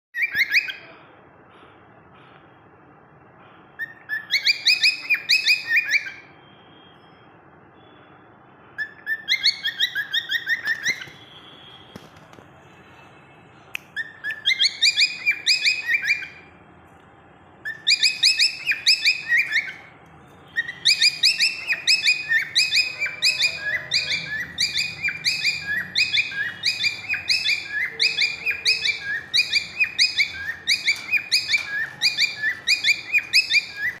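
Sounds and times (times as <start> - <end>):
parrot chirping: 0.2 - 0.9, 3.8 - 6.4, 8.8 - 11.4, 13.9 - 16.5, 17.6 - 34.0.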